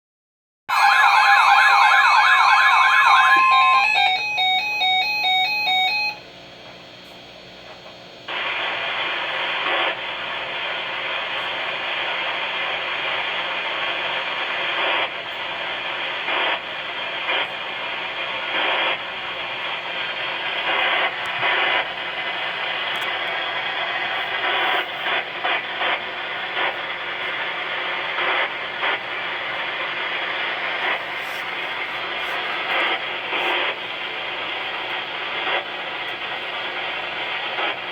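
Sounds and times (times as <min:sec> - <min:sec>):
electronic warbling siren tones: 0:00.7 - 0:06.2
radio static hiss with crackles: 0:06.8 - 0:37.9.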